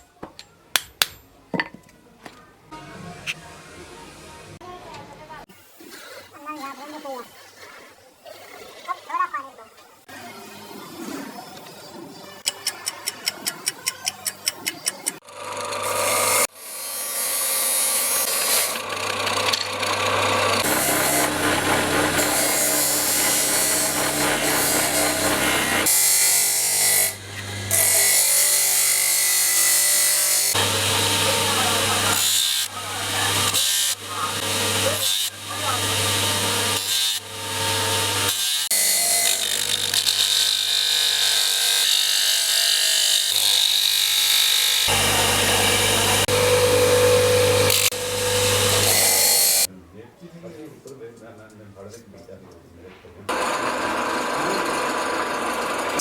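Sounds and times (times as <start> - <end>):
power tool grinding: 15.1 - 49.7, 53.3 - 56.0.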